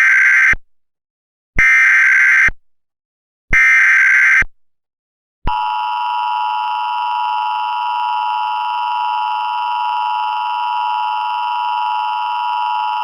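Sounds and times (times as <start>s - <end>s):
two-tone electronic alarm: 1.6s - 2.5s, 3.6s - 4.5s, 5.5s - 13.0s.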